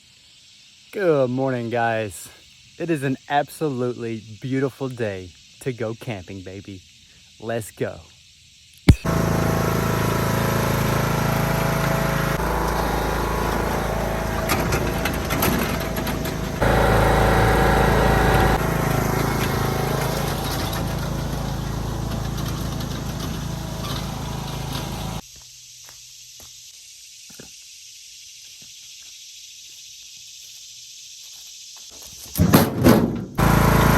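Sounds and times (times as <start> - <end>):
vehicle engine running: 8.9 - 25.2, 33.4 - 33.9.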